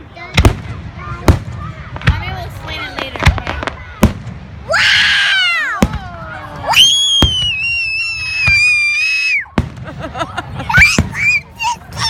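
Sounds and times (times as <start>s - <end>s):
firework bangs: 0.2s - 4.8s, 5.6s - 11.9s
whistling fireworks: 5.7s - 10.1s, 10.7s - 11.6s.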